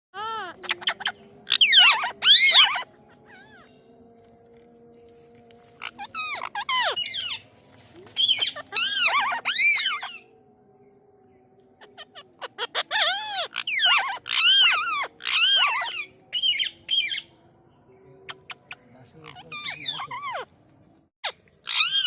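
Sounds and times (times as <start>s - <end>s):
parrot screeching: 0.2s - 3.7s, 5.8s - 7.4s, 8.2s - 10.2s, 11.9s - 17.2s, 19.3s - 20.5s, 21.2s - 22.0s.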